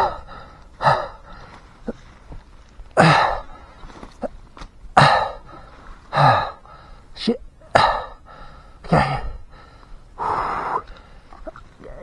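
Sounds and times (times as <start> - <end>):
man whimpering: 11.8 - 12.0.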